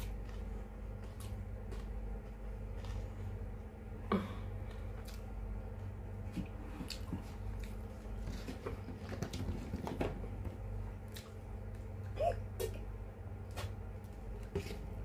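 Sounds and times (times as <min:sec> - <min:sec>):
steady low hum: 0:00.0 - 0:15.0
wet chewing and lip smacks: 0:04.7 - 0:05.3.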